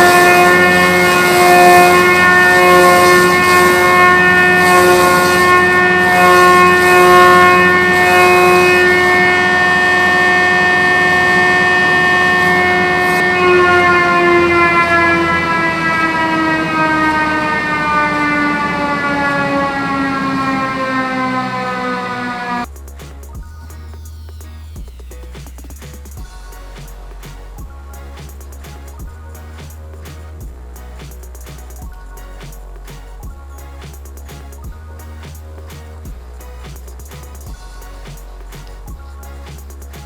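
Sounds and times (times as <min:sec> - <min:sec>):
log-rounding machine whining: 0:00.0 - 0:22.7.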